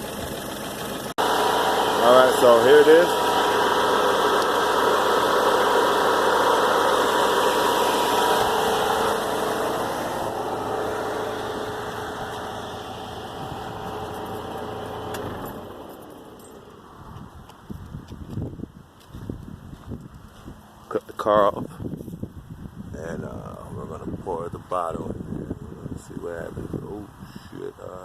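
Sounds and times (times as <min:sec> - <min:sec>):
car engine idling: 0:00.0 - 0:17.7.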